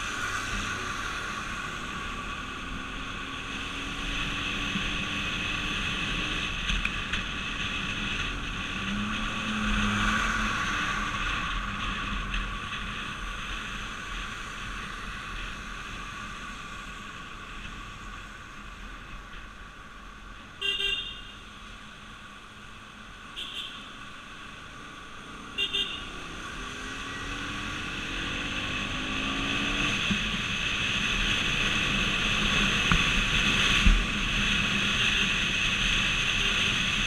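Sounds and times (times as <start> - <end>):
road and tyre noise: 0.0 - 37.0
vehicle horn toot: 20.6 - 21.4, 23.4 - 23.9, 25.6 - 26.2.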